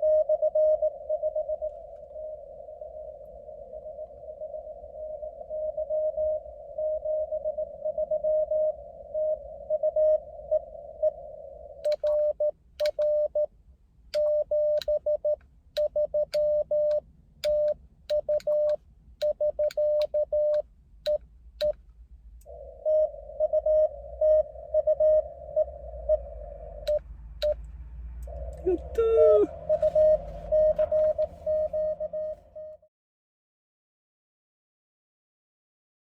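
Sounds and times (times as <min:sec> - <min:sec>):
sidetone beeps with clicks: 0:00.0 - 0:02.4, 0:11.8 - 0:13.5, 0:14.2 - 0:21.8, 0:22.8 - 0:27.6, 0:29.0 - 0:32.8
morse code tone: 0:00.0 - 0:03.2, 0:14.2 - 0:20.6, 0:22.5 - 0:27.7, 0:28.3 - 0:32.9.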